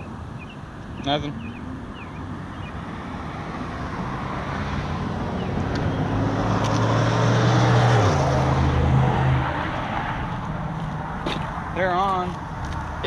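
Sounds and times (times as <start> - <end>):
vehicle driving past: 1.4 - 11.7.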